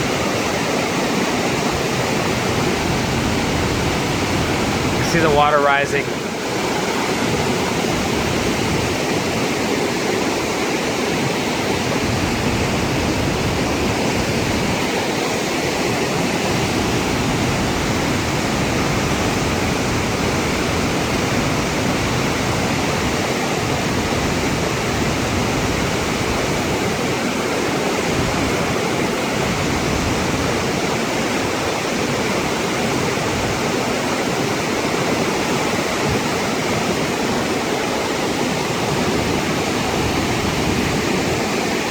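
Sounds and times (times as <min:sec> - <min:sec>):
flood water rushing: 0:00.0 - 0:41.9
waterfall running: 0:00.0 - 0:41.9.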